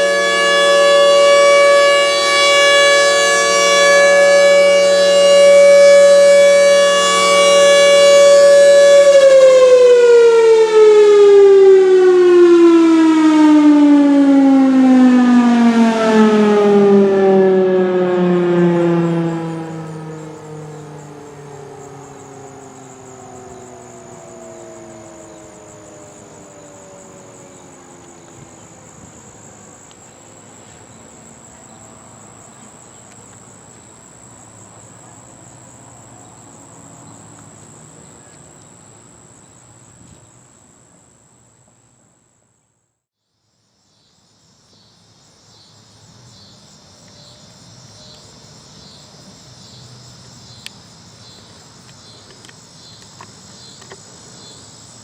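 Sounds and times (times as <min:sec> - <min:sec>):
siren winding down: 0:00.0 - 0:28.6
high insect drone: 0:00.0 - 0:55.0.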